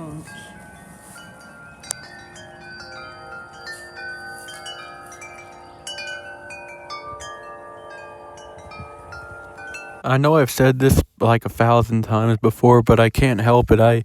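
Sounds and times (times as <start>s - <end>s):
wind chimes ringing: 0.0s - 10.4s.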